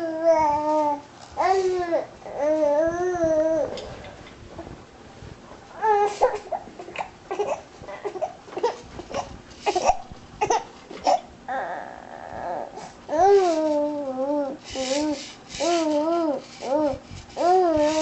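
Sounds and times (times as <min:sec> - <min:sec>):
baby whiny cry: 0:00.0 - 0:03.8, 0:05.8 - 0:08.4, 0:09.7 - 0:18.0
baby babbling and squealing: 0:11.5 - 0:18.0.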